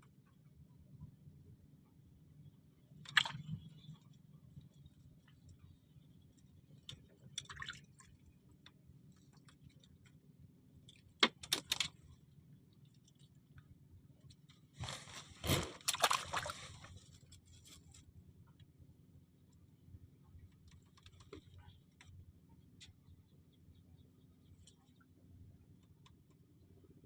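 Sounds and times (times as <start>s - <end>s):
water sloshing and splashing: 3.0s - 10.2s, 14.7s - 18.0s.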